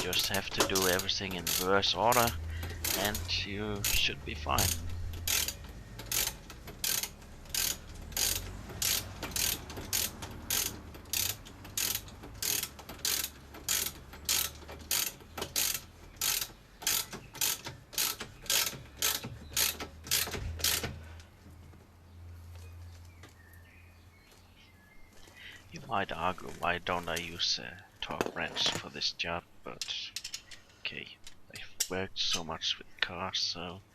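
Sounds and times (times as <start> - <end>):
ratchet wrench clicking: 0.0 - 21.0.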